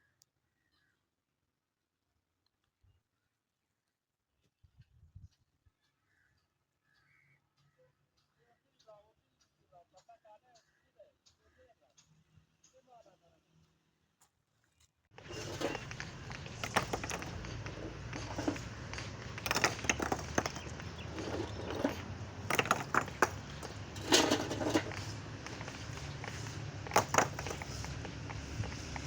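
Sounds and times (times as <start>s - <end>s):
small stones clicking and clattering: 15.2s - 29.0s.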